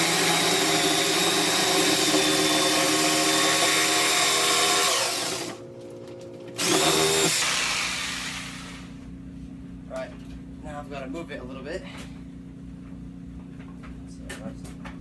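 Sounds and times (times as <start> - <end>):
electric power saw cutting board: 0.0 - 5.6, 6.6 - 8.9.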